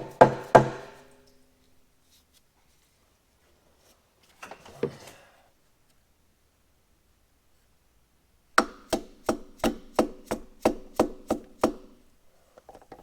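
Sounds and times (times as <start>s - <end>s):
hammer striking metal: 0.0s - 1.1s.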